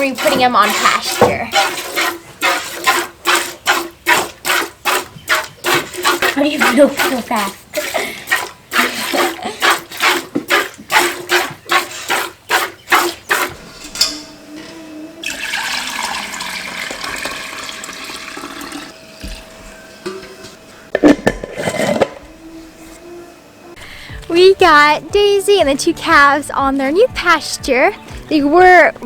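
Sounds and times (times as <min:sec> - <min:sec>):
rush of running liquid: 0:00.0 - 0:13.5
milk squirting into a pail: 0:00.0 - 0:13.6.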